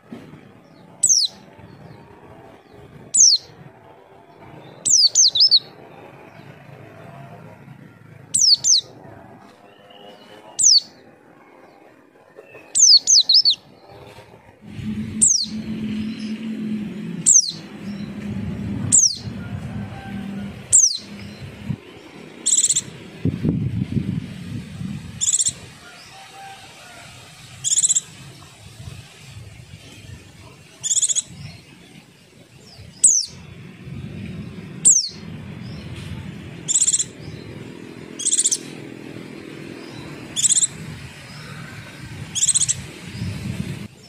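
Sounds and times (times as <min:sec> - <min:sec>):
low hum: 0:14.2 - 0:25.8, 0:32.6 - 0:43.9
bird chirps sliding down: 0:14.6 - 0:19.3, 0:20.7 - 0:21.5, 0:22.4 - 0:22.9, 0:25.2 - 0:25.6, 0:27.6 - 0:28.1, 0:30.8 - 0:31.3, 0:36.7 - 0:37.1, 0:38.2 - 0:38.7, 0:40.4 - 0:40.8, 0:42.4 - 0:42.8
short buzzy bird notes: 0:14.6 - 0:19.5.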